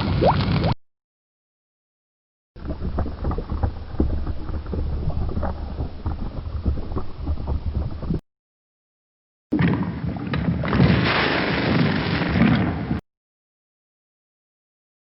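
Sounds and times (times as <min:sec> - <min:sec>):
lava rumbling and crackling: 0:00.0 - 0:00.8, 0:02.6 - 0:08.2, 0:09.5 - 0:13.0.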